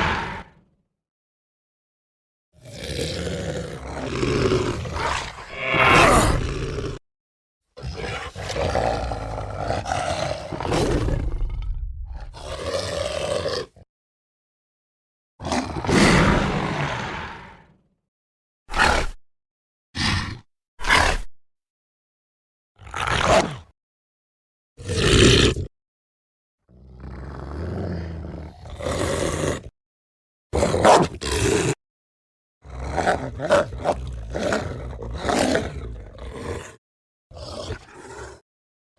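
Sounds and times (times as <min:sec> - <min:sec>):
werewolf growling roar: 0:02.9 - 0:07.0
monster roaring: 0:03.2 - 0:07.0, 0:08.2 - 0:13.8
low rumbling growl: 0:04.0 - 0:07.0, 0:10.5 - 0:12.7.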